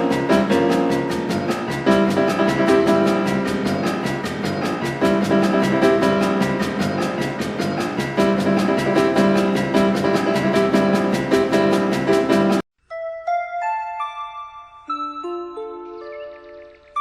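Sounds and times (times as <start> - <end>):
instrumental music with fast beat: 0.0 - 12.6.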